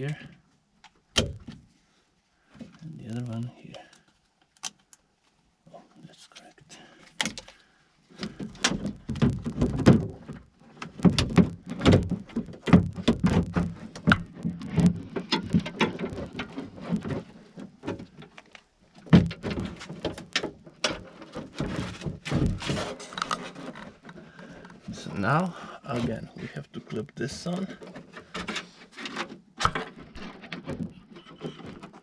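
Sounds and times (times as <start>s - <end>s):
plastic and metal parts clicking: 7.0s - 7.6s, 8.2s - 25.0s.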